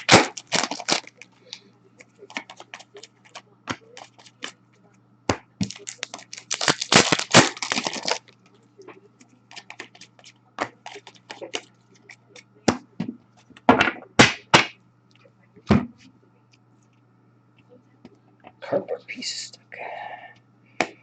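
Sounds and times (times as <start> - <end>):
packaging tearing and crinkling: 0.0 - 1.2, 5.6 - 8.3
wrappers and cardboard rustling: 0.0 - 1.2, 5.6 - 8.3.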